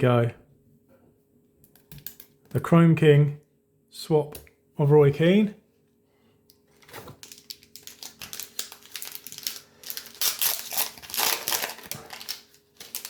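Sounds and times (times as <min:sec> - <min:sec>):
card pack wrapper crinkling: 0:06.7 - 0:13.0.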